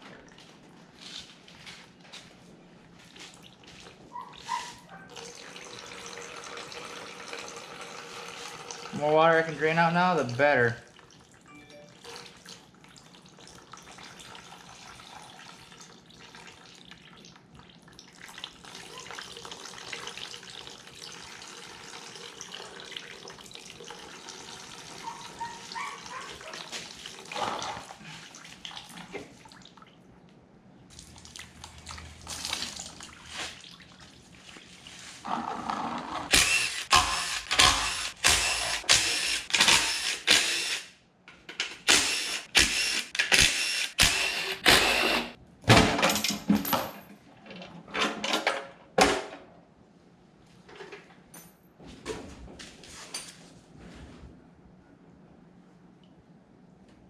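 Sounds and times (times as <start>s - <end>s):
sharp mechanical clacks: 41.7s - 45.3s.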